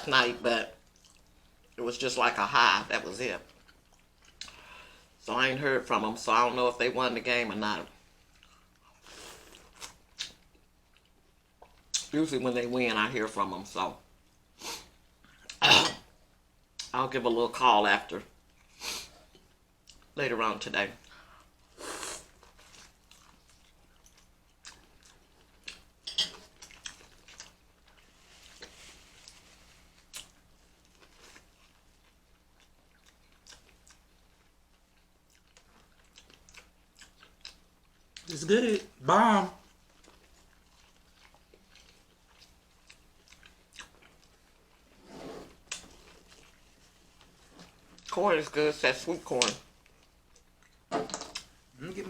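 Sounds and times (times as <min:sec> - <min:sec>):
person chewing food: 0:00.8 - 0:01.8, 0:03.5 - 0:04.7, 0:08.0 - 0:12.1, 0:21.0 - 0:38.3, 0:39.6 - 0:45.0, 0:45.6 - 0:48.1, 0:49.7 - 0:51.6
chewing and biting: 0:22.3 - 0:25.9, 0:39.8 - 0:44.9.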